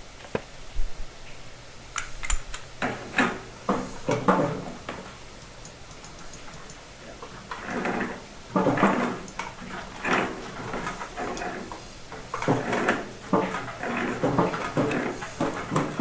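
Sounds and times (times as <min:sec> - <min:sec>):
small metallic clicks: 0:05.4 - 0:06.8
pipe threads creaking and squeaking: 0:07.5 - 0:11.7.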